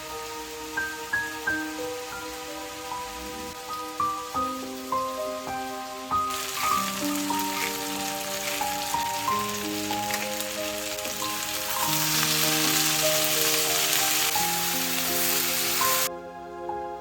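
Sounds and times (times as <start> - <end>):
food sizzling in a frying pan: 0.0 - 16.1
soft background music: 0.0 - 17.0.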